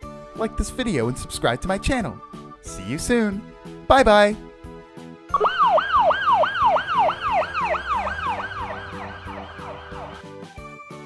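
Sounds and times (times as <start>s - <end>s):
light background music: 0.0s - 11.0s
cartoon siren wail: 5.3s - 10.2s.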